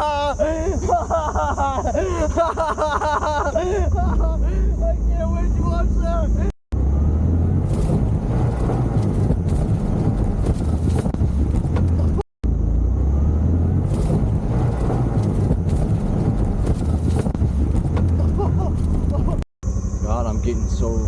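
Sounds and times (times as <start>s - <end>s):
wind buffeting microphone: 7.6s - 12.2s, 13.8s - 19.4s.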